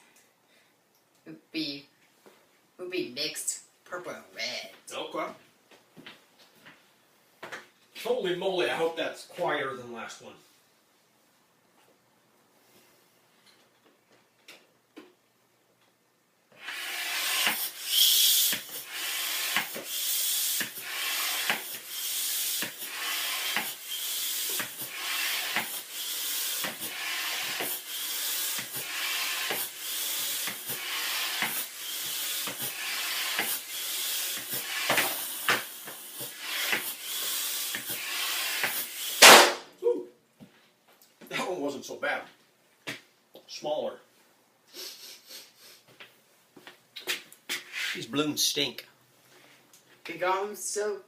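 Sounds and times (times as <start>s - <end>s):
vacuum cleaner air stream hissing: 16.6s - 39.4s.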